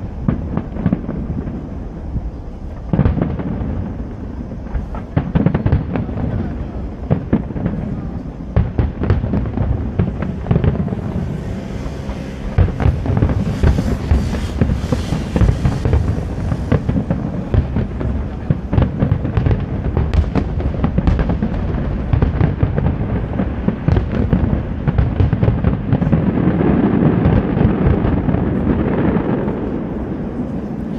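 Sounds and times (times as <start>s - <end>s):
fireworks bangs: 0.0s - 30.9s
heavy low rumble: 5.9s - 30.9s.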